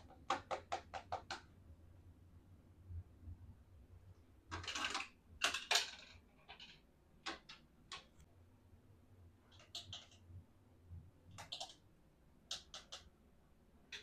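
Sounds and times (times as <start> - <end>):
plastic toy clicks and taps: 12.5 - 13.1.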